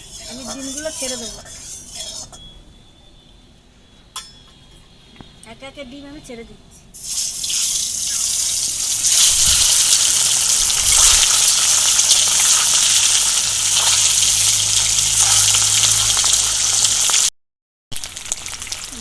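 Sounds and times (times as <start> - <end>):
eggs sizzling in hot oil: 0.0 - 2.3, 7.0 - 17.3, 17.9 - 19.0.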